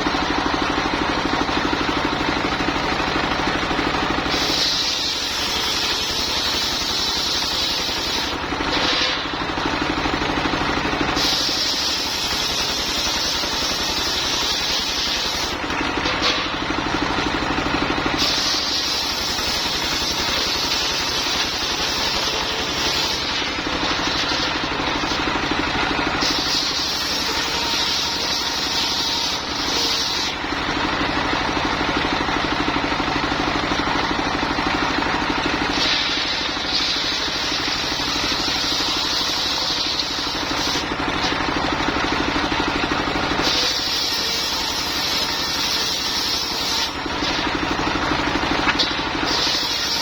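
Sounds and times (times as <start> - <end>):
sawmill engine running: 0.0 - 50.0
saw cutting wood hiss: 4.2 - 9.0, 11.1 - 15.6, 18.1 - 25.3, 26.2 - 30.4, 35.7 - 40.9, 43.4 - 47.6, 48.7 - 50.0.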